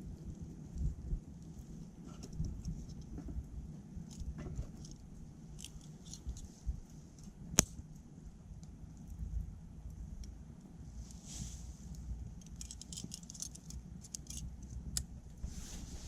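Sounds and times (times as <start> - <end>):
wood fire crackling: 0.0 - 16.0
sharp pop of fire: 7.5 - 7.8.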